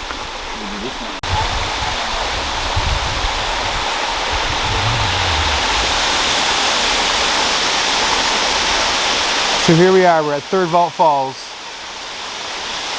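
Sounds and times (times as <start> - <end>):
low rumbles: 3.0 - 7.2.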